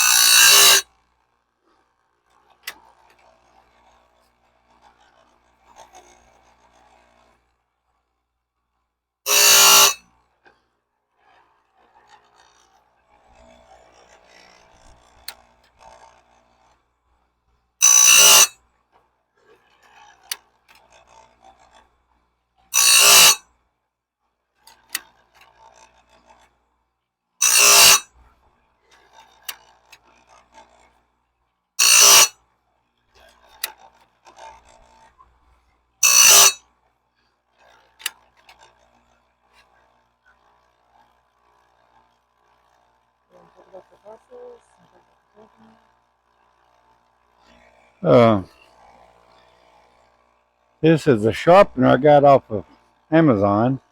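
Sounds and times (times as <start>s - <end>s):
sharpener grinding blade: 0.0s - 0.8s, 9.3s - 10.0s, 17.8s - 18.5s, 22.8s - 23.4s, 27.4s - 28.1s, 31.8s - 32.3s, 36.0s - 36.6s.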